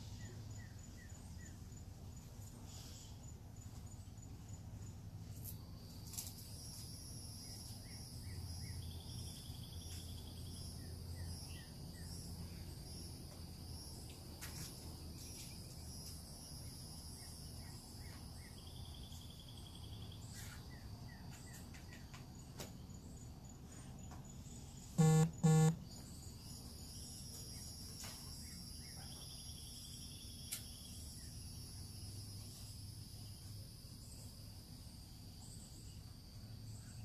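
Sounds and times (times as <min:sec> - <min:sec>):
insects buzzing: 0:25.0 - 0:27.6.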